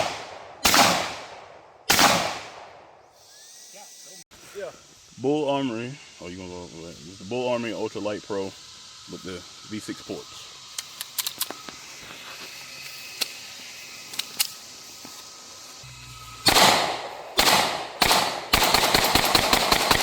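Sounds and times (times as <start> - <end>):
pistol shots: 0.0 - 2.9, 16.4 - 20.0
faint distant gunshots: 0.0 - 3.0, 16.4 - 20.0.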